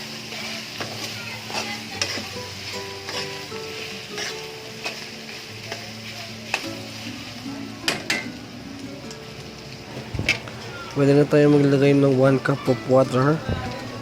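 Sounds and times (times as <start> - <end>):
meat sizzling in hot oil: 0.0 - 14.0
spatula clinking against pan: 0.8 - 5.9.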